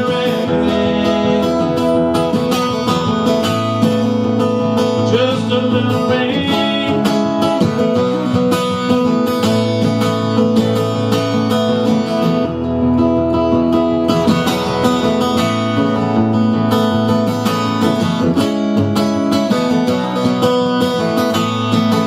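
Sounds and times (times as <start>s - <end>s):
acoustic guitar strumming: 0.0s - 22.0s
bass line: 0.0s - 22.0s.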